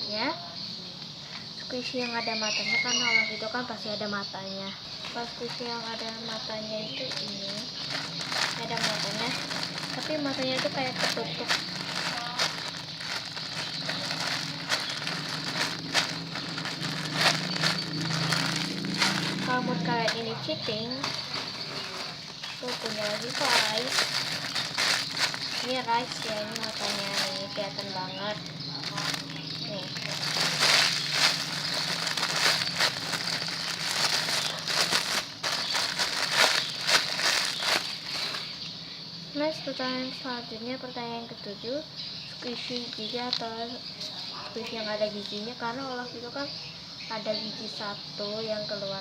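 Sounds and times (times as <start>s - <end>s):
plastic wrapping crinkling: 5.0s - 38.6s
squishy toys crackling and rustling: 5.0s - 38.6s.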